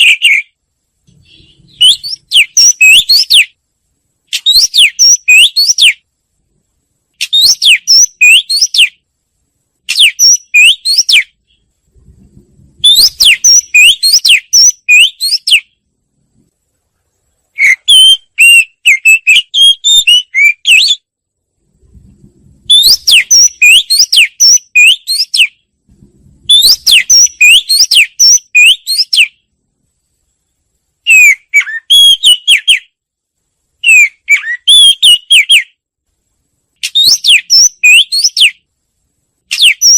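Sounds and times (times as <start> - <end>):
bird whistling song: 0.0 - 3.6, 4.3 - 6.0, 7.2 - 9.0, 9.9 - 11.7, 12.8 - 15.8, 17.6 - 21.1, 22.7 - 25.6, 26.5 - 29.5, 31.0 - 33.0, 33.8 - 35.8, 36.8 - 38.7, 39.5 - 39.9.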